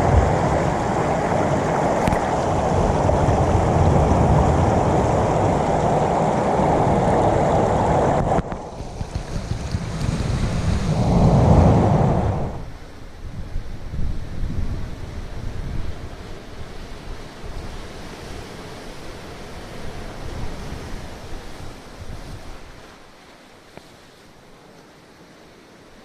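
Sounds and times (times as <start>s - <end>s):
wave surging in: 0.0s - 13.0s
wind buffeting microphone: 0.0s - 18.5s
surf on a rocky shore: 0.0s - 26.0s.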